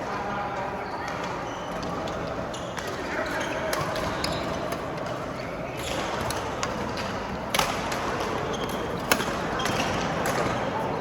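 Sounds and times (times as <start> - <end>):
rackets striking shuttlecock: 5.8 - 10.6.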